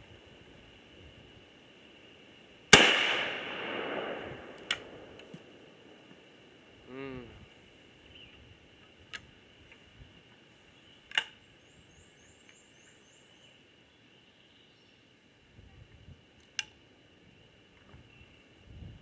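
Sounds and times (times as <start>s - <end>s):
sharp clicks: 2.8s - 5.5s.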